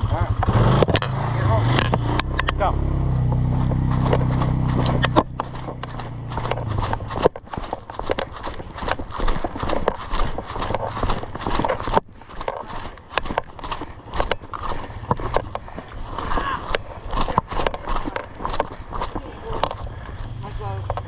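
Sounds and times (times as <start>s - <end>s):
low rumble: 1.2s - 12.0s
running footsteps: 1.8s - 21.0s.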